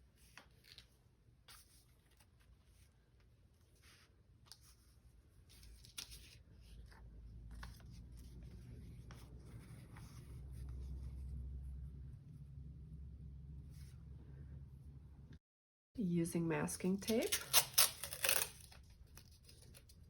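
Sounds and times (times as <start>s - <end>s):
low rumble: 8.5s - 15.4s.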